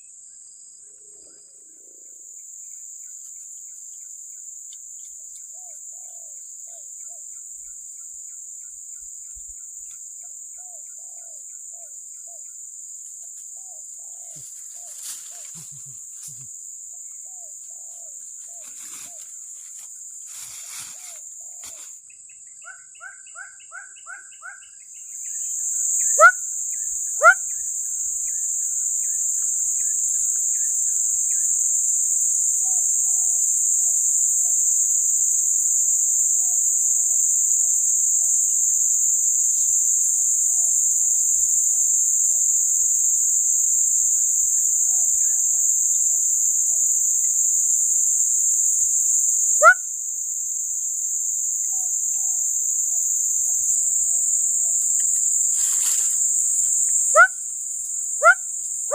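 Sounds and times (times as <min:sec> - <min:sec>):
bird chirps: 0:22.4 - 0:27.7
high-pitched insect drone: 0:24.8 - 0:58.9.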